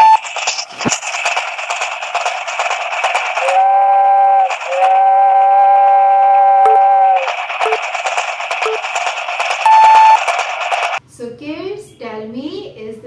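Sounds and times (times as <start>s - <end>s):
train rattling along: 0.0s - 11.0s
two-note train whistle: 3.4s - 7.3s.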